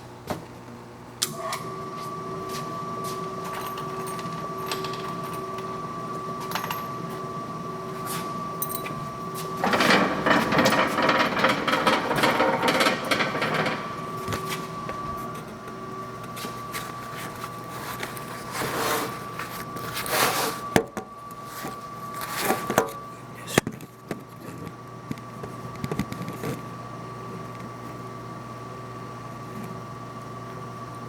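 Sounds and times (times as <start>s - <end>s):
riveting machine strokes: 9.4s - 15.2s
knocks and clattering: 9.6s - 15.4s.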